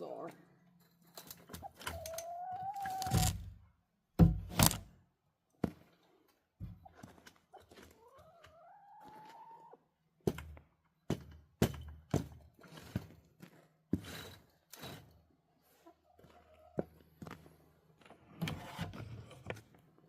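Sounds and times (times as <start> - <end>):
hollow thunks and knocks: 4.2 - 4.8.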